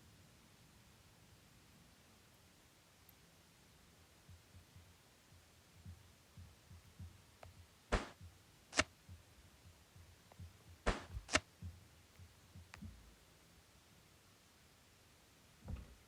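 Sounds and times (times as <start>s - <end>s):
soft handling bumps: 9.0s - 13.2s, 15.6s - 16.0s.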